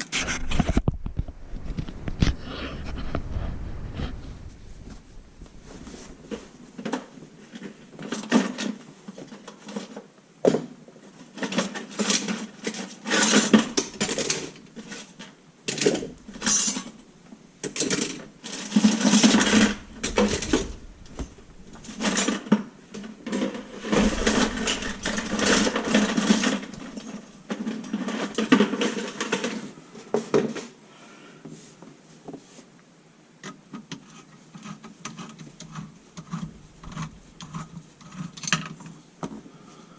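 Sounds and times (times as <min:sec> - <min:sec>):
tools and drain parts clattering: 0:11.5 - 0:17.0, 0:17.6 - 0:29.6.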